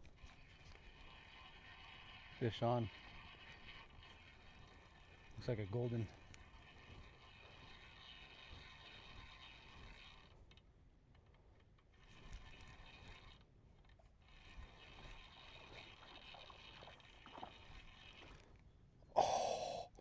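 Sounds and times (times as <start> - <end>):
fishing reel whirring: 0.0 - 10.6, 11.8 - 18.6
loud burst of breathy noise: 19.2 - 20.0.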